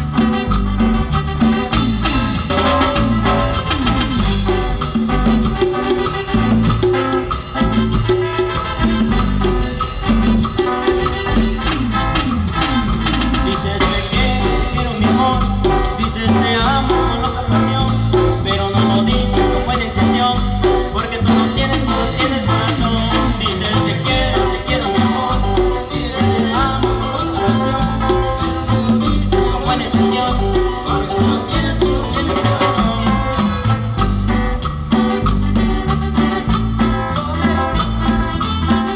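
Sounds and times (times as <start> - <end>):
latin dance band playing: 0.0 - 38.9.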